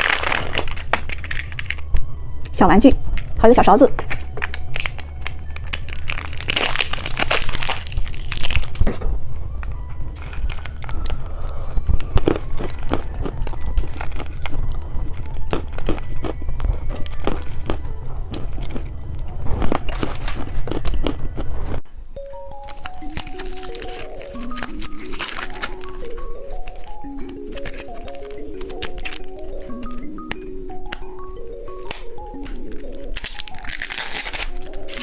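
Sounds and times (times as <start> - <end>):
plastic packaging crinkling: 0.0 - 21.6, 22.2 - 35.0
steady low hum: 0.0 - 23.3.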